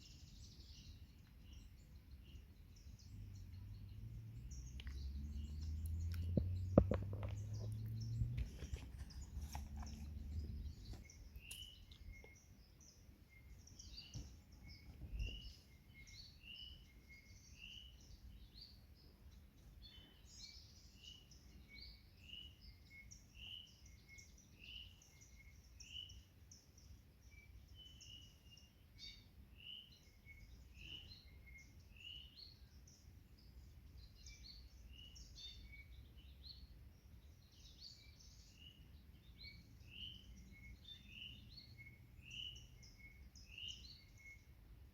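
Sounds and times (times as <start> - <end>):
small birds chirping: 0.0 - 44.9
faint low rumble: 1.2 - 12.4.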